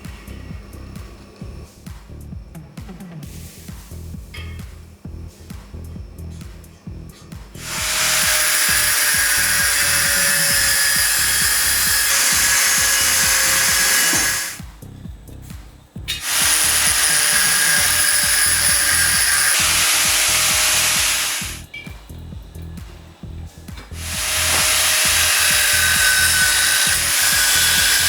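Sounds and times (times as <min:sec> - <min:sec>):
background music with beat: 0:00.0 - 0:08.0, 0:19.2 - 0:25.0
power tool running: 0:07.6 - 0:14.6, 0:16.1 - 0:21.7, 0:24.0 - 0:28.0.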